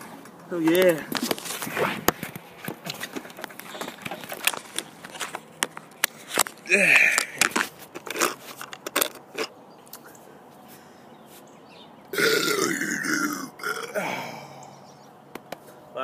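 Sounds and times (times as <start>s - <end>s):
man burping: 6.6s - 7.4s, 12.1s - 14.7s.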